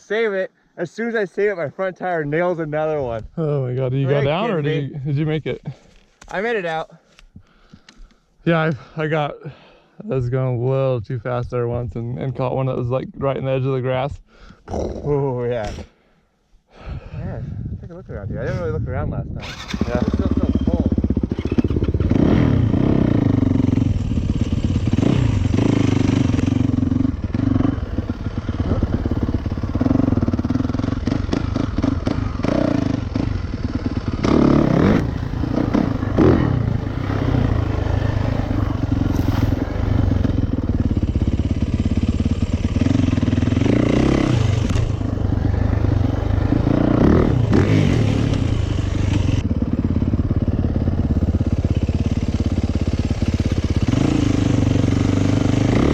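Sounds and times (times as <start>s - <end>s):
motorcycle engine revving: 19.4s - 55.9s.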